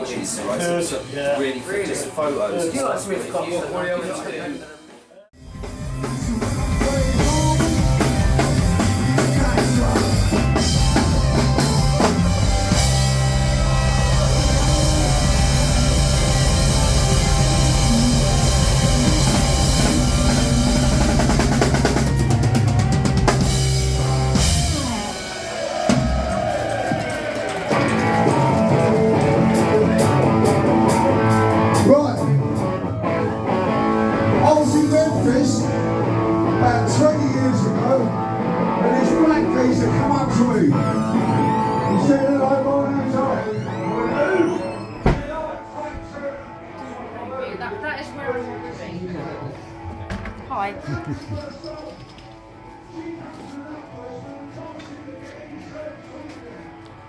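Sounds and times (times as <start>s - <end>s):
rock band playing: 5.4s - 45.7s.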